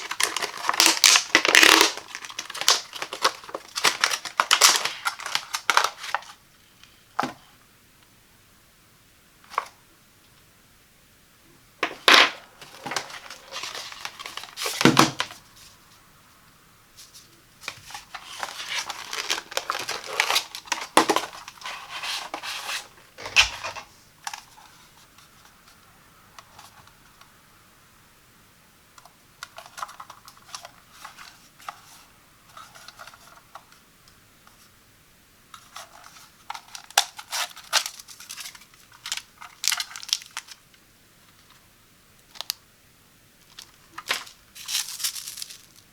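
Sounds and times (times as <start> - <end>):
packaging tearing and crinkling: 0.0 - 6.4, 11.8 - 15.4, 17.8 - 23.8, 35.8 - 40.6, 43.5 - 45.9.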